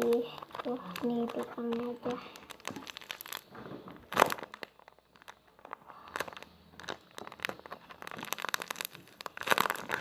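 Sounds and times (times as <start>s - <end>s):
plastic bag crinkling: 0.0s - 10.0s.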